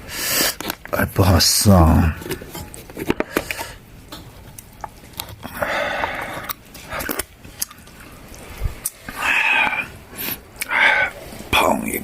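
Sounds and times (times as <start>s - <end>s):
person chewing: 4.4s - 10.8s.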